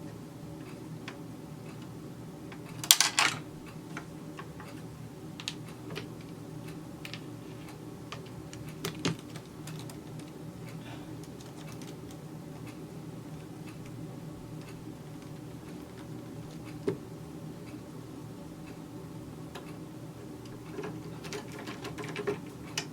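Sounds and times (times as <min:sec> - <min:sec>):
small clicks and taps of machine parts: 0:02.5 - 0:10.4, 0:20.4 - 0:22.9.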